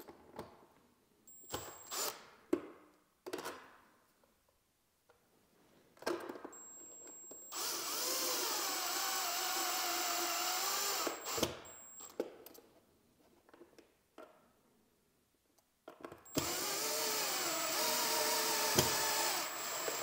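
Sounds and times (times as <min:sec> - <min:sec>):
power drill driving a screw: 0:01.4 - 0:02.2, 0:07.4 - 0:12.1, 0:16.3 - 0:20.0.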